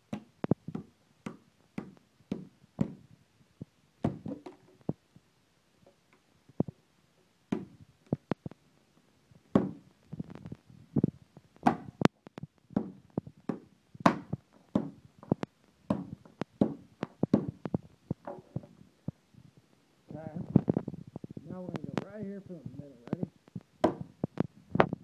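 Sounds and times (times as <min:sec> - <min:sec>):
hard object knocking on phone: 0:15.9 - 0:17.6.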